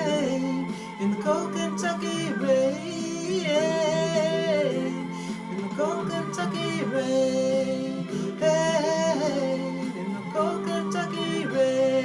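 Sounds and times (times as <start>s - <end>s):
instrumental backing: 0.0s - 12.0s.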